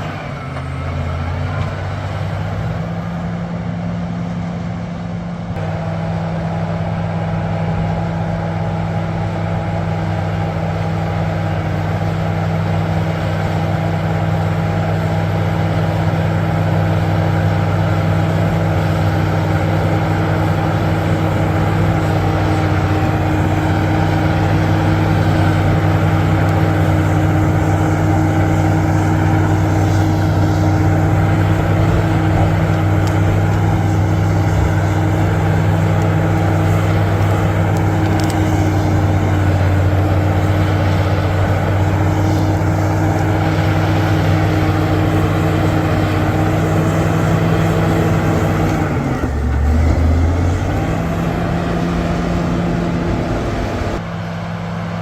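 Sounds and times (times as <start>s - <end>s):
heavy diesel engine running: 0.0s - 55.0s.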